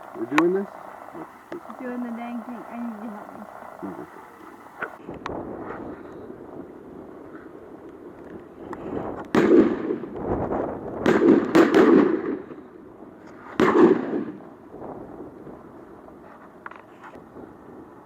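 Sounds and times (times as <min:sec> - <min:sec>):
shotgun shots with echo: 0:09.3 - 0:10.1, 0:11.0 - 0:12.6, 0:13.6 - 0:14.4.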